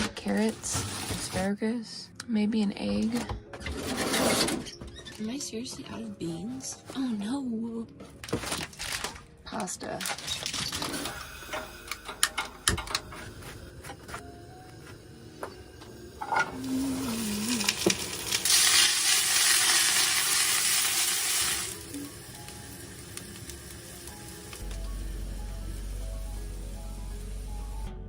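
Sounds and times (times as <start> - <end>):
vegetables sizzling in a pan: 16.2 - 27.8.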